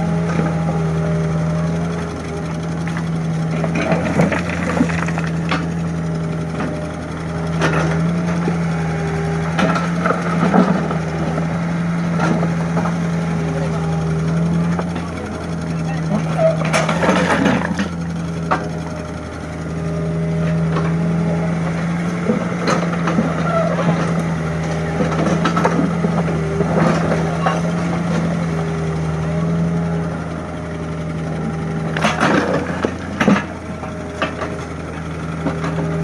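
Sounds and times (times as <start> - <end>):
engine humming steadily: 0.0 - 36.0
knocks and clanks: 16.1 - 18.9, 31.9 - 34.7.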